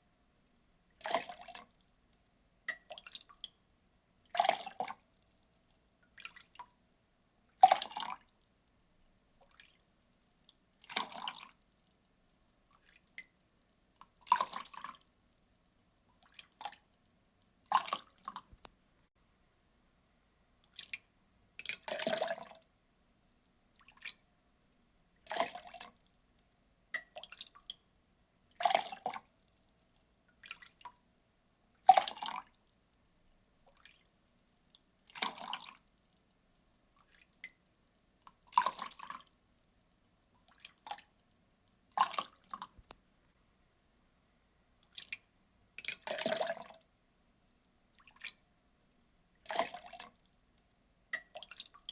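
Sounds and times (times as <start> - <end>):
water pouring in splashes: 21.6 - 22.6, 25.2 - 26.0, 31.8 - 32.5, 33.7 - 34.1, 35.1 - 35.8, 38.5 - 39.2, 45.8 - 46.8, 49.4 - 50.2.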